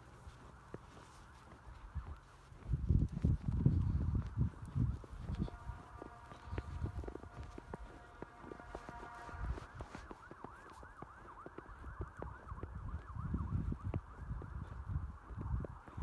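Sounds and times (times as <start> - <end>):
wind rumbling on microphone: 0.0 - 16.0
siren yelping: 4.4 - 16.0.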